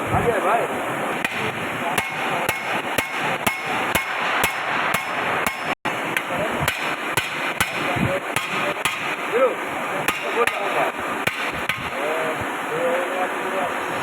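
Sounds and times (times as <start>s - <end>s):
hand hammer striking metal: 1.2s - 9.2s, 10.0s - 12.0s.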